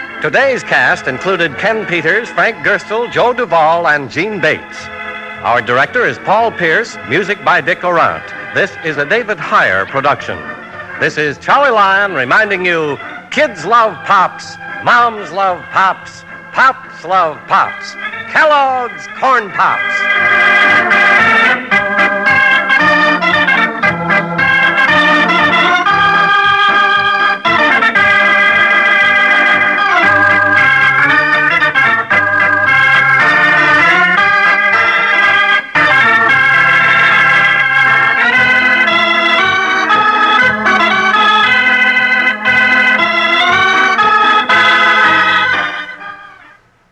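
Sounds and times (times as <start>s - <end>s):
radio theme music with bass line: 0.2s - 22.2s.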